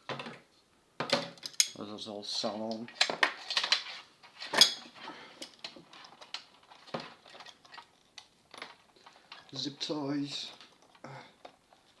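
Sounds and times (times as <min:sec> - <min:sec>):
hand tools clicking on metal: 0:01.4 - 0:01.8.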